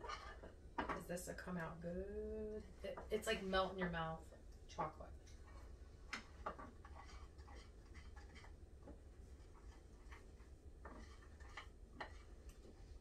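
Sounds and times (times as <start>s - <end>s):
utensil stirring thick mixture: 0.0s - 1.5s, 4.3s - 13.0s.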